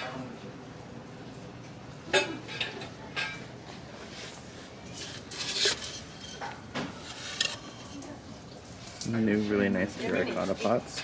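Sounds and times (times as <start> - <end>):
store background noise: 0.0 - 11.0
ceramic pots clinking: 4.8 - 9.1.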